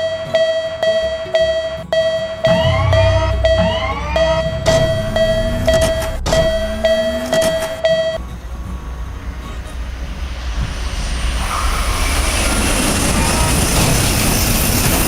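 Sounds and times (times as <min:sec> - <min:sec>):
railroad crossing bell clanging: 0:00.0 - 0:08.2
train rumble: 0:08.2 - 0:15.0.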